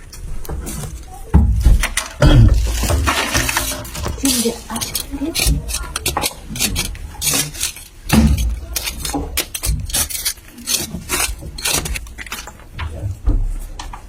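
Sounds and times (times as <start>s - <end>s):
clatter of hard objects: 0.0s - 14.0s
heavy thumps: 0.6s - 7.1s.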